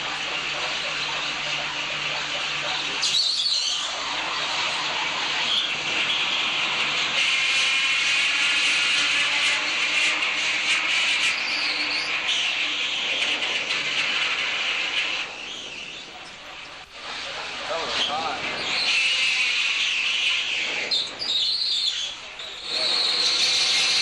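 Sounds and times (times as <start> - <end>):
sawmill machinery hissing: 0.0 - 24.0.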